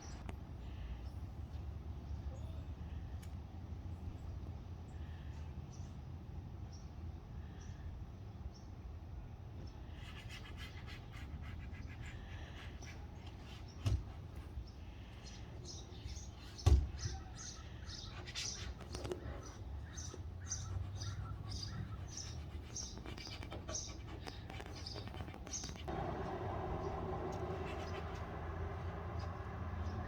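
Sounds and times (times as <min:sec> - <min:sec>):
bird chirping: 0:14.6 - 0:30.0.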